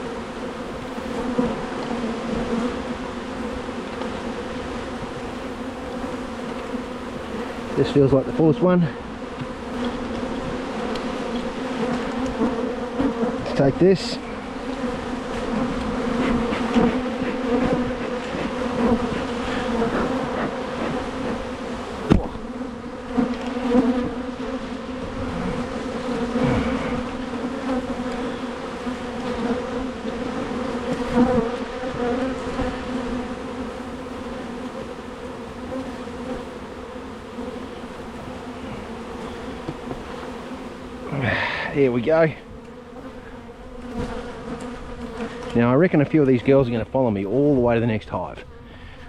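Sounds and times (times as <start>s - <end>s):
honeybees humming: 0.0s - 49.0s
sharp knock: 22.1s - 22.4s.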